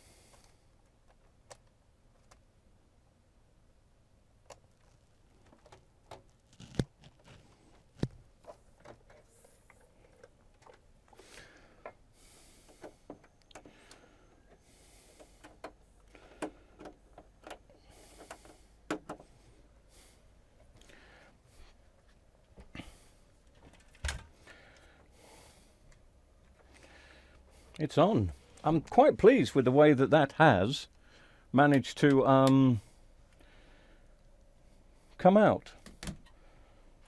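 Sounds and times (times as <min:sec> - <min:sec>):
hands clicking and knocking on plastic: 0:15.4 - 0:19.3.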